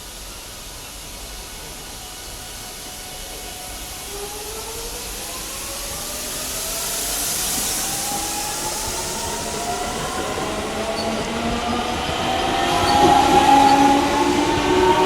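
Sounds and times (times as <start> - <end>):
train hiss: 0.0 - 15.0
train traction motor whine: 1.9 - 15.0.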